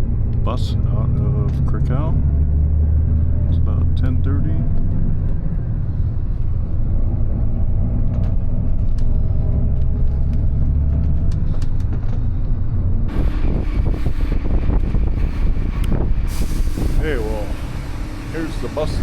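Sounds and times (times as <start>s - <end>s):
bus engine and road rumble: 0.0s - 19.0s
wind buffeting microphone: 11.3s - 19.0s.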